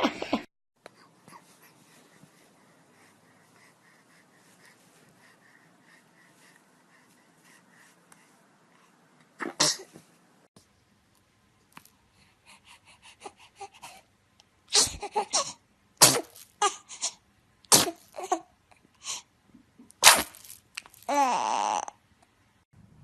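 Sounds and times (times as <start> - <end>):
baby sniffles and breaths: 0.8 - 9.0, 12.1 - 14.1
baby sneezing: 9.4 - 10.0, 14.7 - 18.4, 20.0 - 20.6.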